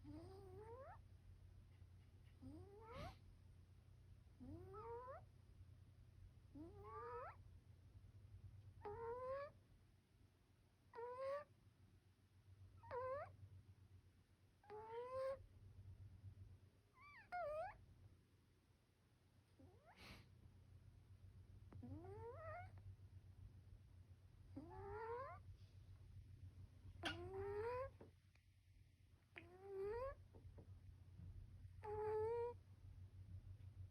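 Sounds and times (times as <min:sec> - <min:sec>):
cat snoring: 0:00.0 - 0:00.9, 0:04.4 - 0:05.2, 0:06.6 - 0:07.2, 0:21.8 - 0:22.5.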